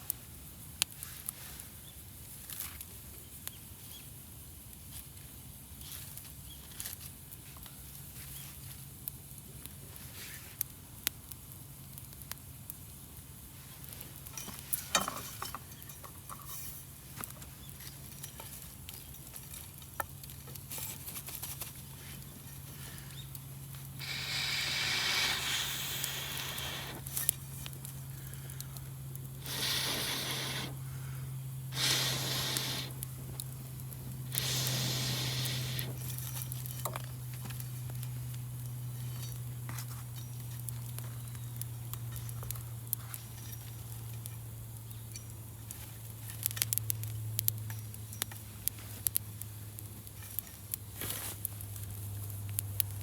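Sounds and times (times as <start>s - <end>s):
campfire crackling and popping: 8.8s - 53.0s
fire hissing: 22.0s - 36.8s.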